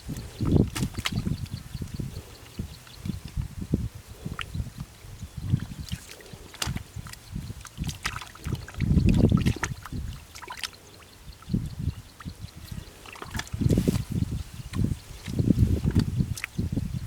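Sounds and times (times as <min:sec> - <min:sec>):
splashing in muddy water: 0:00.0 - 0:01.6, 0:05.4 - 0:11.0, 0:12.2 - 0:16.7
small wet clicks: 0:04.3 - 0:11.0, 0:12.2 - 0:13.8, 0:14.7 - 0:16.7.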